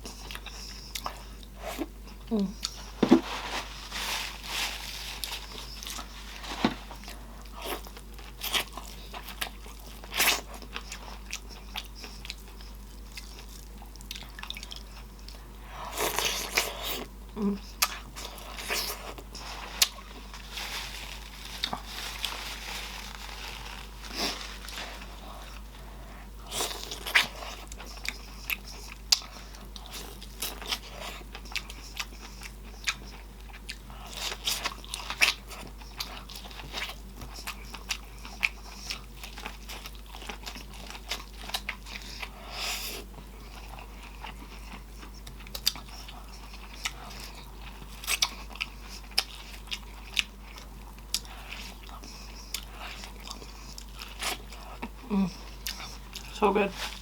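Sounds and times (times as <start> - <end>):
person chewing: 0.0 - 57.0.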